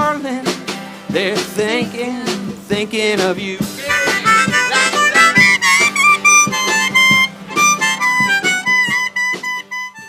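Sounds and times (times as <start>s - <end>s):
strummed chords: 0.8s - 10.0s
wavering held melody: 3.8s - 10.0s.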